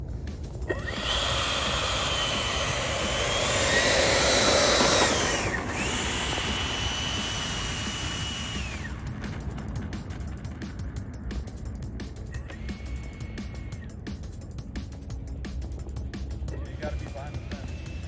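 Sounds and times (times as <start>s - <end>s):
model jet engine whine: 0.4s - 10.8s, 12.2s - 14.0s, 16.6s - 18.0s.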